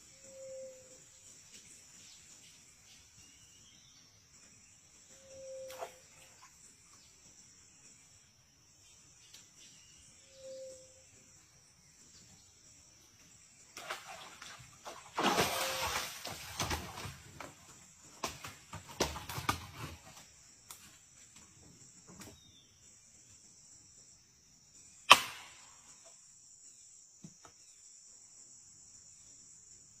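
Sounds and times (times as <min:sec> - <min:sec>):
insects chirring: 0:00.0 - 0:30.0
sharp knock: 0:25.1 - 0:25.5.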